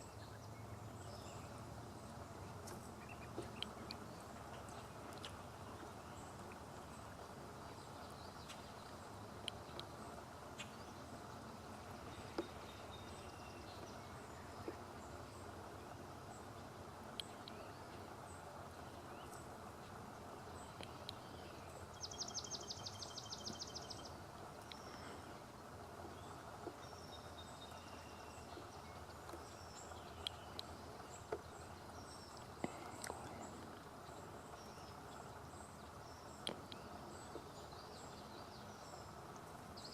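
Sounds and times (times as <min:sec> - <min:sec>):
low background hiss: 0:00.0 - 0:39.9
small bird chirps: 0:26.0 - 0:39.2.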